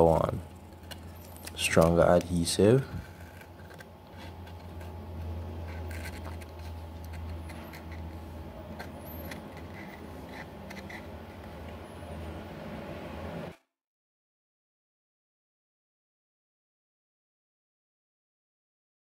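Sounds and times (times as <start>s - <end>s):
steady low hum: 0.0s - 13.6s
small tools clicking and scratching: 0.1s - 11.8s.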